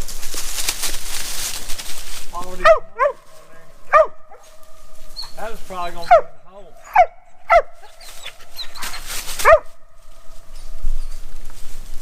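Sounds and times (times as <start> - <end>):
rustle: 0.0 - 6.1, 7.7 - 12.0
dog barking: 2.6 - 4.5, 6.0 - 9.8.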